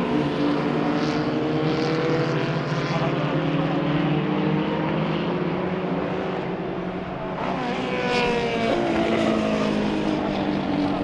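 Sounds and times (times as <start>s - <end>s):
racing car engines running: 0.0s - 11.0s
racing car passing by: 7.4s - 11.0s.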